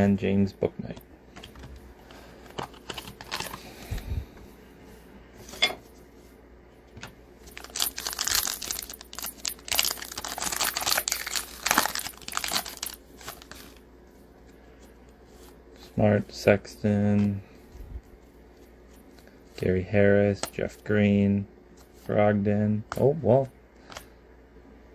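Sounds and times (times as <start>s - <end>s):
plastic wrapper crinkling: 7.5s - 13.8s
plastic wrapper tearing: 7.6s - 13.6s.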